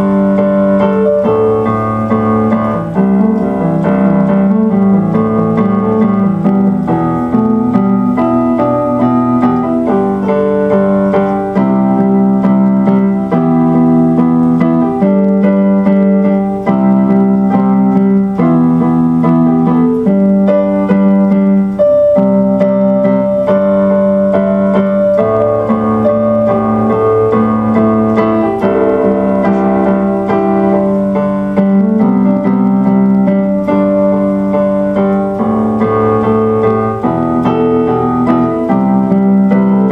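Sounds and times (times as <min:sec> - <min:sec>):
piano chords: 0:00.0 - 0:39.9.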